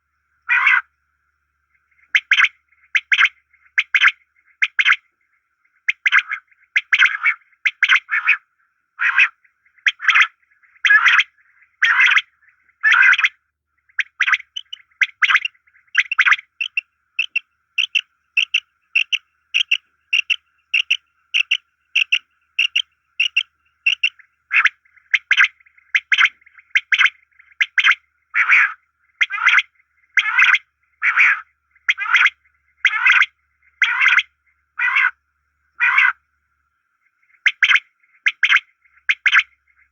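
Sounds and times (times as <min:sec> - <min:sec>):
bird short calls: 0:14.0 - 0:29.6.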